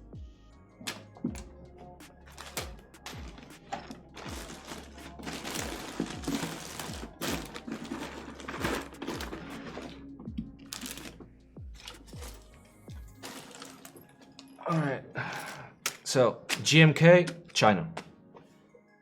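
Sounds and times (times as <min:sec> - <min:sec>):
music with thumping beat: 0:00.0 - 0:13.2
rustling: 0:02.3 - 0:10.0, 0:10.7 - 0:11.2, 0:13.2 - 0:14.1.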